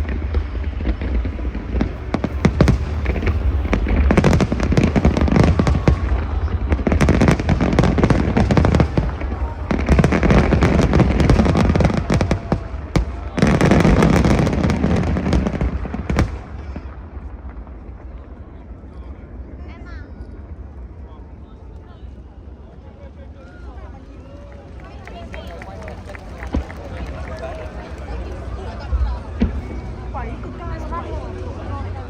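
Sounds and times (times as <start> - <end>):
fireworks bursting: 0.0 - 18.3.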